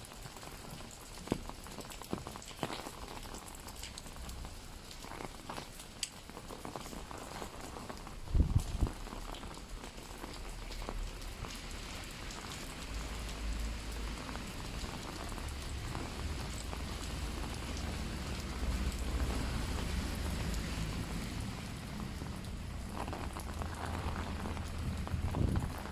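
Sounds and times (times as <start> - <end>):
rain on an umbrella: 0.0 - 25.9.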